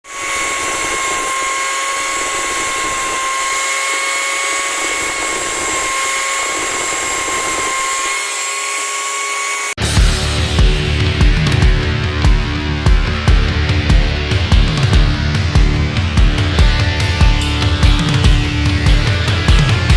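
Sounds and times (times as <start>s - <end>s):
electric grinder whining: 0.0s - 19.9s
heavy rock music: 9.8s - 19.9s.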